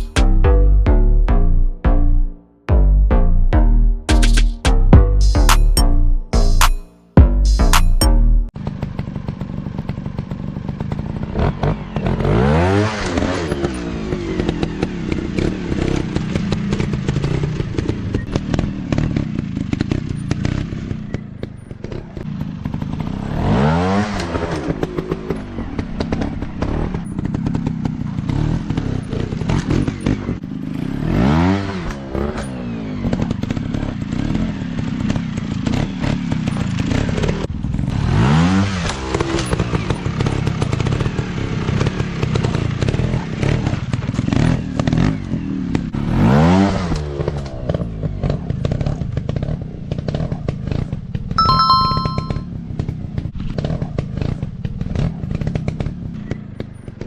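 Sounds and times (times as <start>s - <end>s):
motorcycle engine revving: 7.6s - 51.3s.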